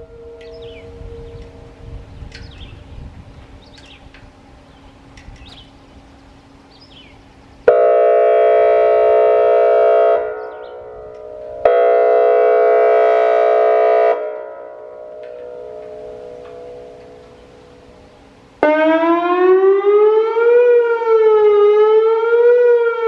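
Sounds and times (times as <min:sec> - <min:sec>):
siren echo: 0:00.0 - 0:02.2, 0:07.6 - 0:23.0
warning siren blasts: 0:00.0 - 0:23.0.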